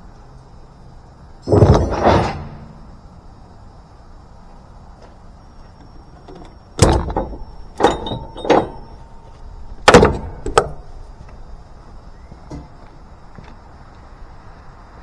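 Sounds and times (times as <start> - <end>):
sharp metallic knocks and clanks: 1.4 - 3.0, 6.8 - 10.9.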